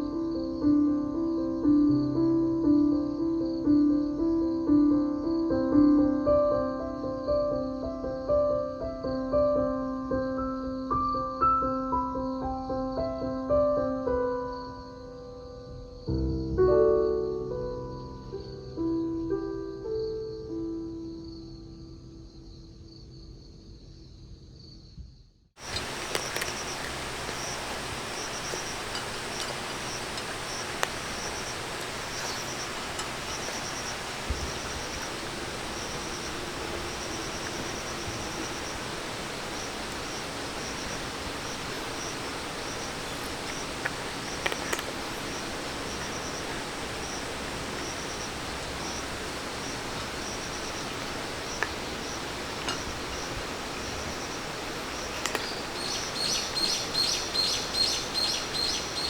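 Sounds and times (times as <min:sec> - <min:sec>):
high insect trill: 0:00.0 - 0:08.7, 0:10.2 - 0:59.0
steady rushing noise: 0:25.6 - 0:57.0
light clicks: 0:25.7 - 0:47.4, 0:55.0 - 0:55.6.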